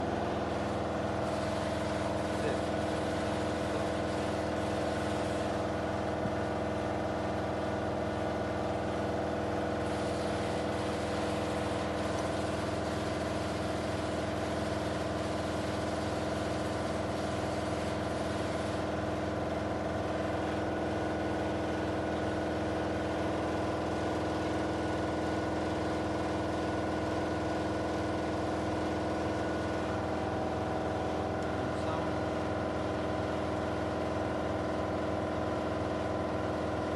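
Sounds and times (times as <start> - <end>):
car engine idling: 28.1 - 35.4.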